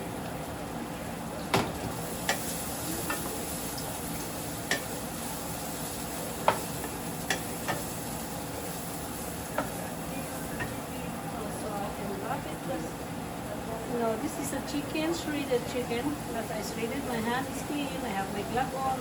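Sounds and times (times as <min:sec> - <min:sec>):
oil sizzling in a pan: 0:01.4 - 0:13.0
utensil clicking against pan: 0:04.7 - 0:04.9, 0:06.5 - 0:07.8.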